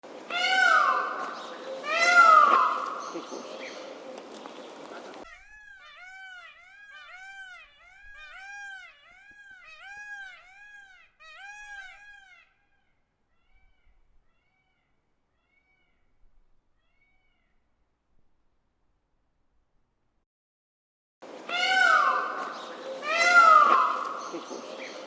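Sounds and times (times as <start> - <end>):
peacock calling: 0.1 - 16.0, 21.2 - 25.0.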